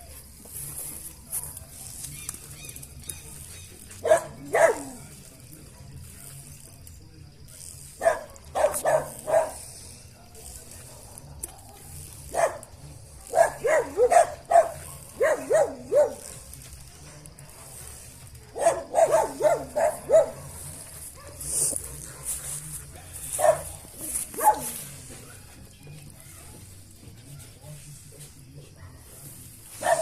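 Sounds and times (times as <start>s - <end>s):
dog barking: 4.0s - 5.1s, 8.0s - 9.8s, 10.9s - 16.5s, 18.5s - 24.8s, 28.8s - 30.0s.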